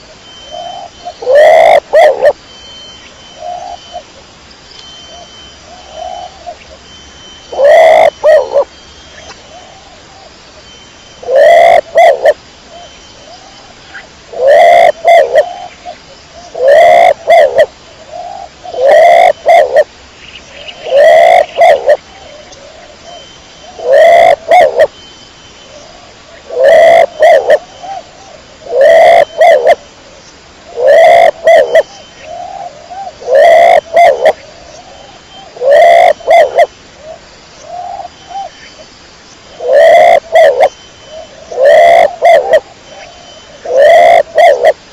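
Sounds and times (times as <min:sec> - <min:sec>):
pigeon cooing: 0:00.5 - 0:02.4, 0:07.5 - 0:08.7, 0:11.2 - 0:12.4, 0:14.3 - 0:15.7, 0:16.5 - 0:17.7, 0:18.3 - 0:19.9, 0:20.8 - 0:22.0, 0:23.8 - 0:24.9, 0:26.5 - 0:28.0, 0:28.6 - 0:29.8, 0:30.7 - 0:34.4, 0:35.5 - 0:36.7, 0:39.6 - 0:44.8.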